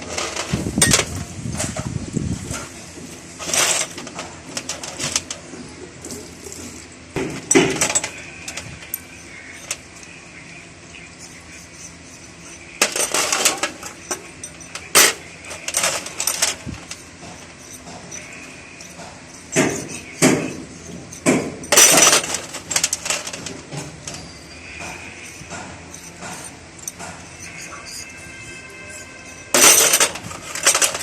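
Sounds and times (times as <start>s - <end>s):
hard objects clattering: 0.0s - 9.9s, 11.9s - 31.0s.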